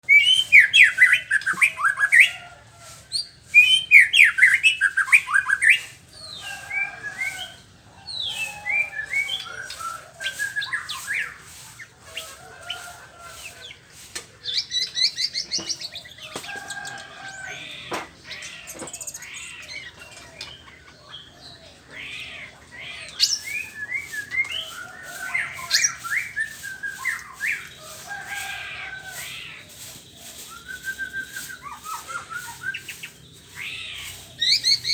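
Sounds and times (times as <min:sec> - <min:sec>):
bird singing whistled trills: 0:00.0 - 0:02.4, 0:03.2 - 0:11.4, 0:23.0 - 0:27.8, 0:30.2 - 0:33.7.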